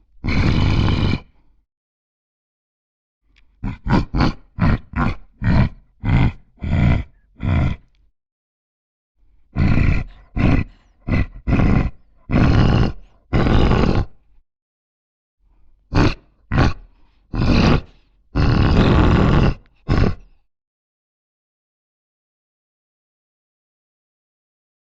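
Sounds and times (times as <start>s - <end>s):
voice grunting and groaning: 0.0s - 1.4s, 3.6s - 8.0s, 9.5s - 14.2s, 15.9s - 20.4s.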